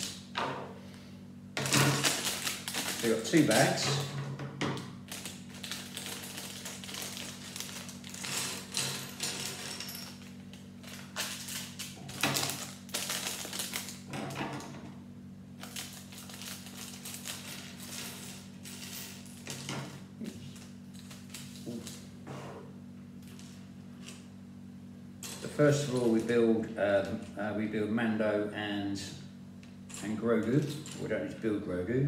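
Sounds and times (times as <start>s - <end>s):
steady low hum: 0.0s - 32.0s
plastic bags crinkling: 1.6s - 3.8s, 5.0s - 14.1s, 15.6s - 19.7s, 20.3s - 22.1s.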